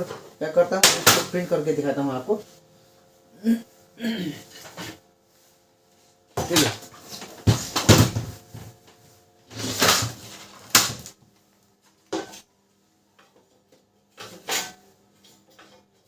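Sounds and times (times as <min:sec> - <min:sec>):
faint steady hum: 0:00.0 - 0:16.0
plastic parts knocking and clattering: 0:07.4 - 0:08.4.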